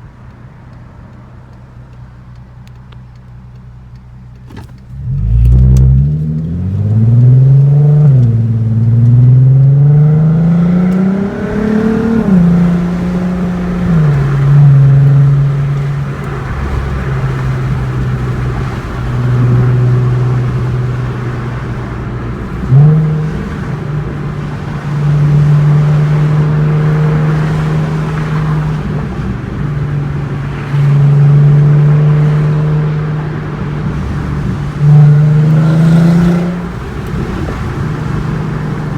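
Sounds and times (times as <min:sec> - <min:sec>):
car engine revving: 0:04.3 - 0:38.9.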